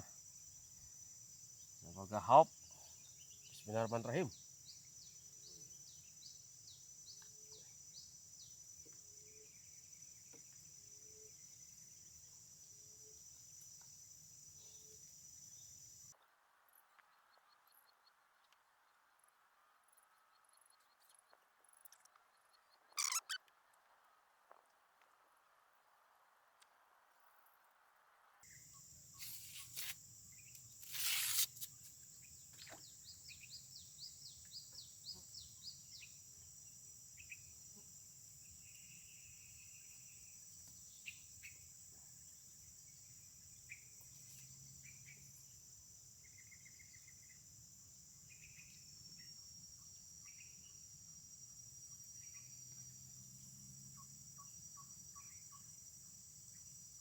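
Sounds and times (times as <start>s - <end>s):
insects trilling: 0.0s - 16.1s, 23.0s - 23.4s, 28.4s - 57.0s.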